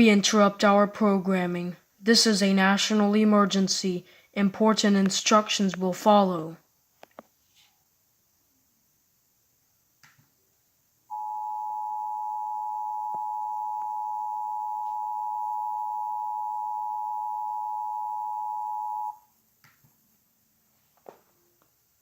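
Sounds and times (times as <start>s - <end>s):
two-tone alert signal: 11.1s - 19.2s.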